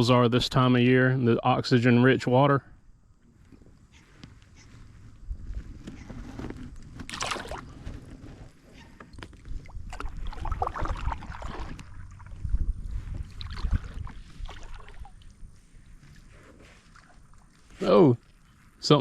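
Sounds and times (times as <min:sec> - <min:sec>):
water splashing and sloshing: 0:06.0 - 0:19.0.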